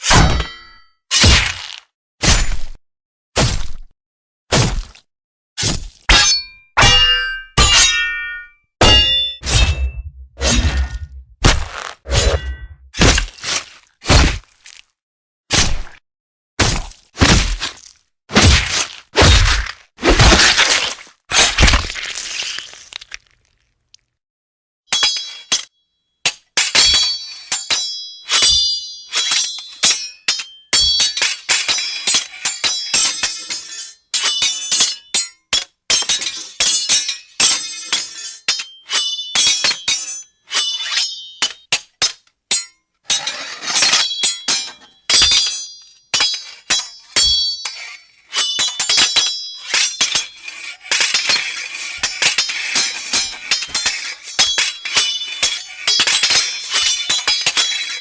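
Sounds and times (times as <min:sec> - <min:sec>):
steel swords clashing: 0:00.0 - 0:01.6, 0:06.1 - 0:13.4, 0:24.9 - 0:58.0.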